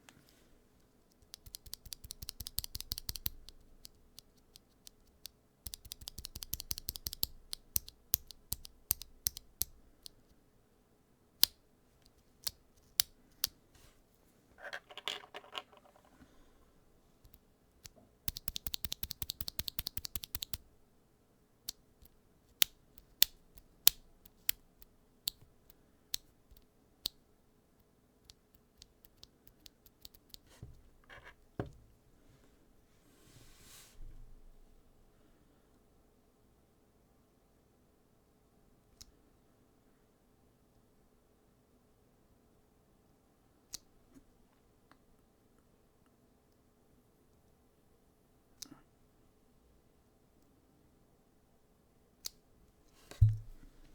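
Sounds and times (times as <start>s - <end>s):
mechanical keyboard keys clacking: 5.7s - 9.4s, 18.3s - 20.6s.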